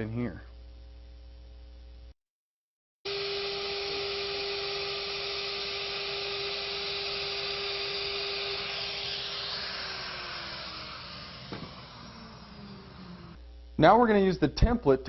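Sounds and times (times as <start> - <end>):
router spindle high whine: 3.1 - 13.4.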